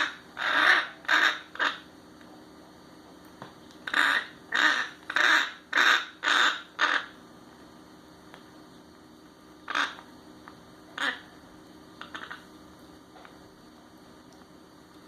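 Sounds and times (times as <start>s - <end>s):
bird giving harsh calls: 0.0s - 1.9s, 3.9s - 7.2s, 9.6s - 10.0s, 11.0s - 11.3s, 12.0s - 12.4s.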